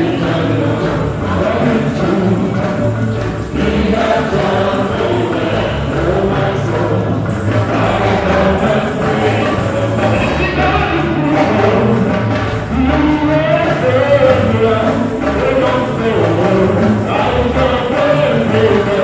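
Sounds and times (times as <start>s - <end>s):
choir singing a hymn: 0.0s - 19.0s
low instrumental backing: 0.0s - 19.0s.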